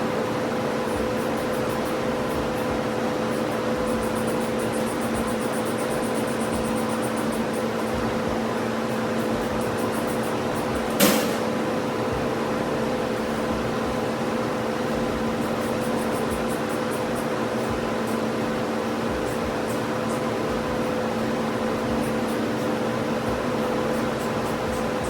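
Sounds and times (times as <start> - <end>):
steady machine hum: 0.0 - 25.0
sharp knock: 10.9 - 11.6.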